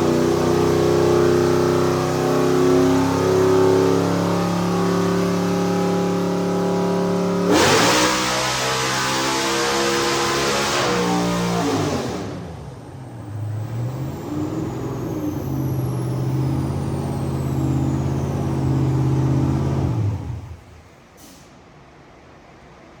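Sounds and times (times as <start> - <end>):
car engine running on dyno: 0.0 - 21.0
high supercharger whine: 0.0 - 21.0
short hiss: 21.2 - 21.6.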